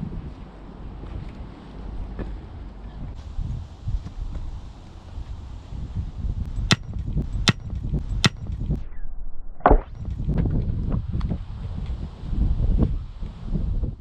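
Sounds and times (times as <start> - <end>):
wind buffeting microphone: 0.0 - 9.1, 9.8 - 14.0
sharp knocks: 6.7 - 8.6.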